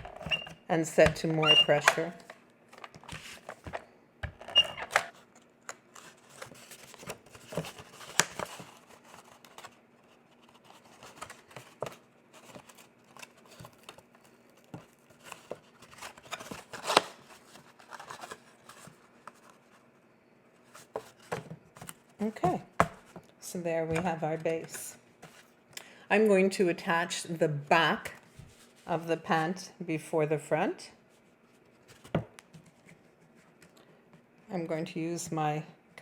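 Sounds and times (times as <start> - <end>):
faint steady hum: 0.0 - 36.0
cardstock rustling and creasing: 4.4 - 19.8.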